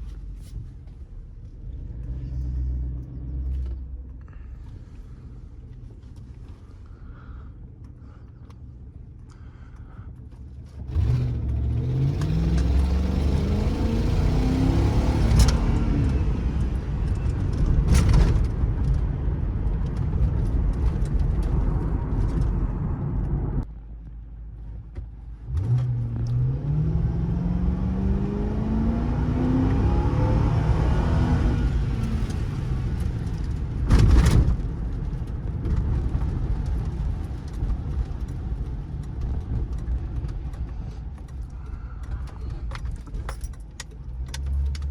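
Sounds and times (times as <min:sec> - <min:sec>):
car engine accelerating: 0:10.6 - 0:23.7, 0:25.3 - 0:44.9.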